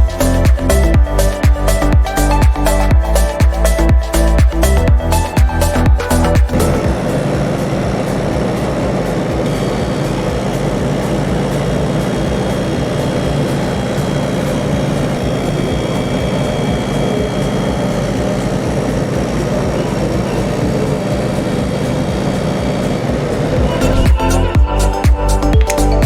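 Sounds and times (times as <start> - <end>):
cnc machine running: 0.0 - 24.8
faint high whine: 5.7 - 24.6.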